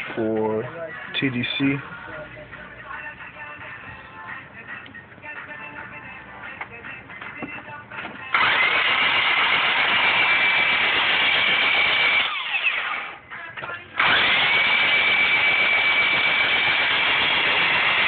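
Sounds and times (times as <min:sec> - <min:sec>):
starter motor cranking engine: 0:08.2 - 0:13.2, 0:14.0 - 0:18.0.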